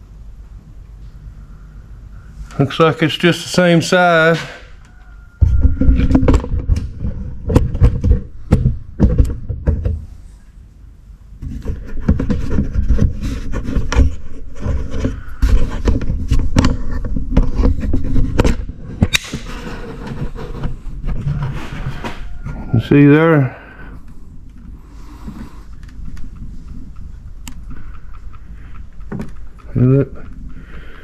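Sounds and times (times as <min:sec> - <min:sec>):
handling rumble: 0:00.0 - 0:31.0
steady low hum: 0:00.0 - 0:31.0.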